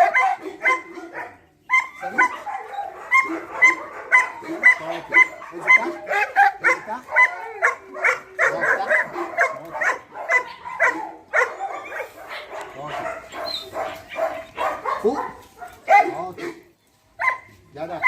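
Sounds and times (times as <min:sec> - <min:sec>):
dog barking: 0:00.0 - 0:17.6
dog yipping and whining: 0:01.7 - 0:06.3, 0:10.3 - 0:12.2, 0:13.2 - 0:14.7.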